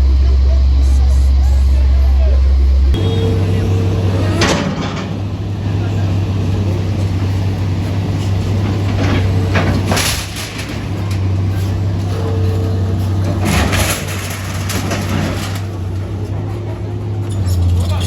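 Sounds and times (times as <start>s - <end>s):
engine humming: 0.0s - 18.0s.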